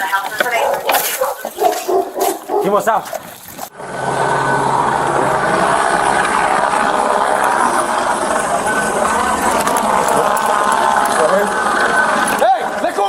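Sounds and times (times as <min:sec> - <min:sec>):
helicopter rotor drone: 0:03.7 - 0:13.0.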